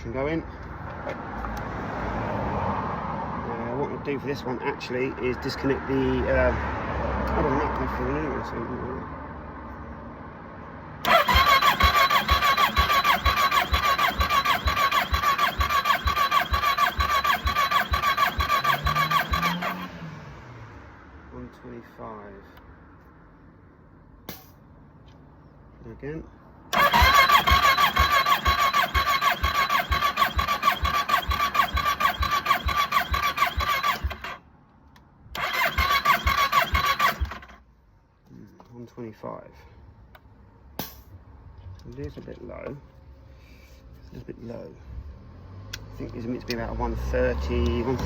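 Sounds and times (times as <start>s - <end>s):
engine starter whining: 11.0s - 20.1s, 26.7s - 34.4s, 35.3s - 37.6s.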